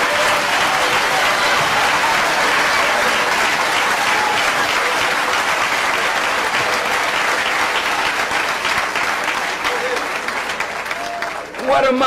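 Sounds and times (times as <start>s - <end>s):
congregation applauding: 0.0s - 12.0s.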